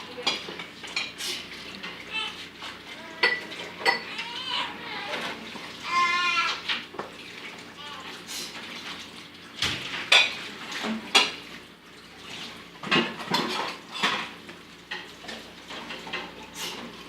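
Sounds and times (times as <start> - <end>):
dishes and cutlery clattering: 0.2 - 2.0, 2.7 - 5.5, 9.6 - 11.5, 12.8 - 17.0.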